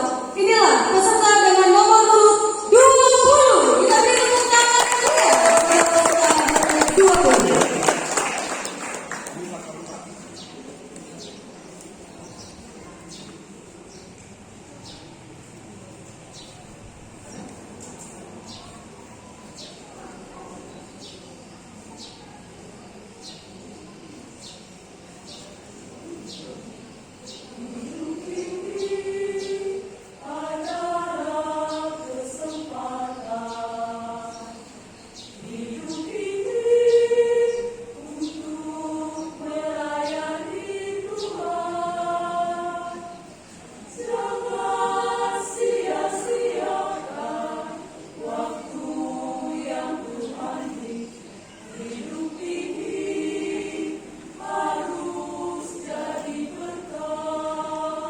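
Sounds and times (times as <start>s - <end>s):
choir singing: 0.0s - 9.4s, 27.5s - 58.0s.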